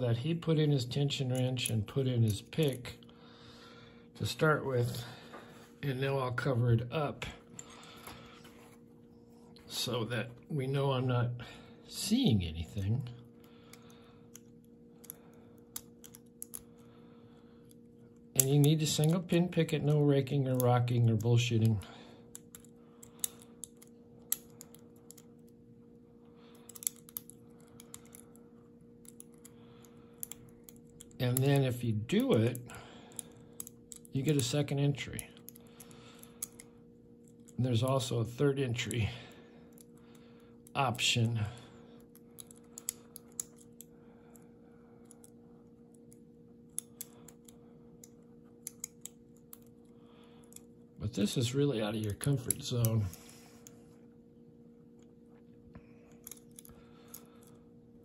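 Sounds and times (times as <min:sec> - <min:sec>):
steady low hum: 0:00.0 - 0:58.0
lock pick clicking in padlock: 0:26.6 - 0:28.3.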